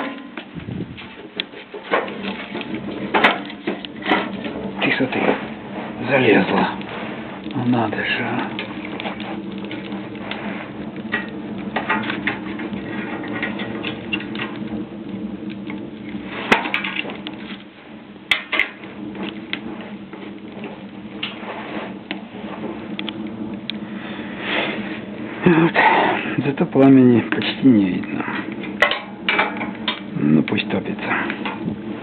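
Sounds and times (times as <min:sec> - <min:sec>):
wood fire crackling in a stove: 0:00.0 - 0:32.0
sharp wood cracks: 0:06.2 - 0:21.4.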